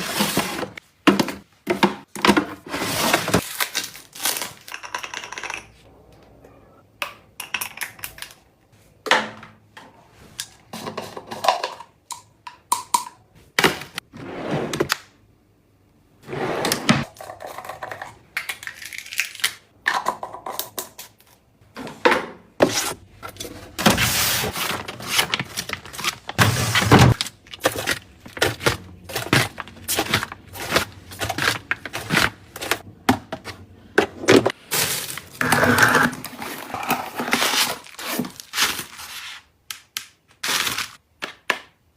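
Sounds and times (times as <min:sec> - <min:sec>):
packaging rustling and scraping: 0:22.6 - 0:32.9, 0:34.5 - 0:39.5.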